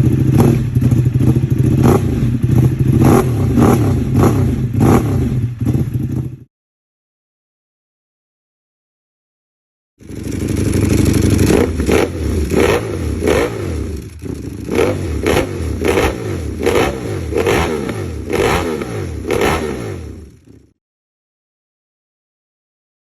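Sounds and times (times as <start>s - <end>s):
motorcycle engine revving: 0.0s - 6.5s, 10.0s - 20.8s.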